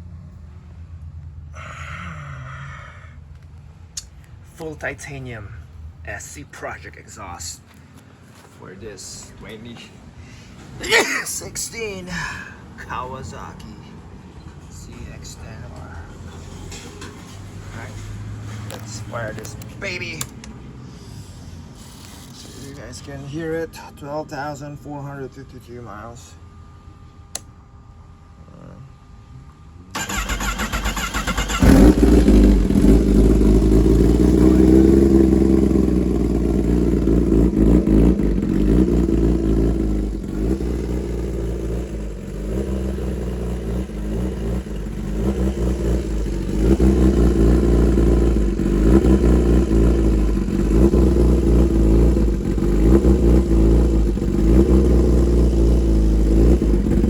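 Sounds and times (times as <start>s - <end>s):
motorcycle starter cranking: 30.0s - 34.4s
motorcycle engine idling loudly: 31.2s - 57.0s.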